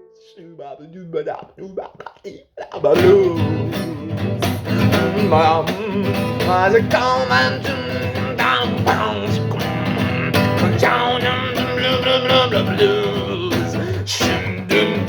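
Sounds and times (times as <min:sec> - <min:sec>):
bent lead guitar notes: 0:02.8 - 0:15.0
blues-rock band playing: 0:03.0 - 0:15.0.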